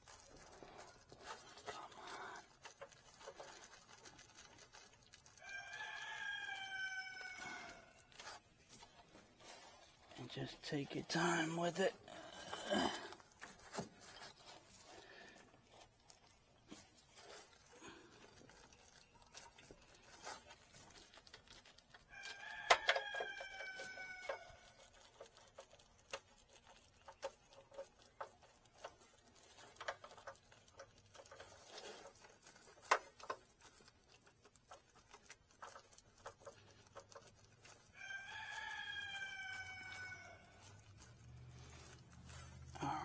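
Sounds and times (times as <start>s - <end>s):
rooster crowing: 5.4s - 8.1s, 22.1s - 24.7s, 37.9s - 40.7s.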